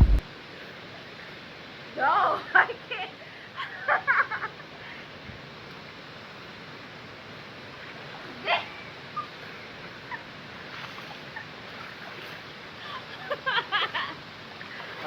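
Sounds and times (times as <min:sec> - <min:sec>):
river water rushing: 0:00.0 - 0:00.2.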